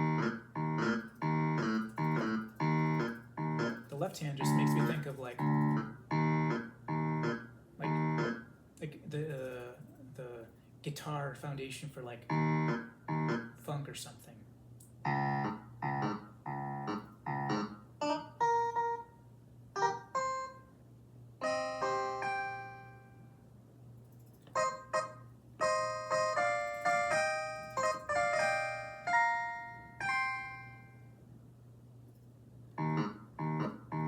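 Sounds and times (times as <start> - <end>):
plucked digital piano chords: 0.0 - 8.5, 12.3 - 13.7, 15.0 - 19.2, 19.8 - 20.8, 21.4 - 23.2, 24.1 - 31.0, 32.8 - 34.0
faint low hum: 0.0 - 34.0.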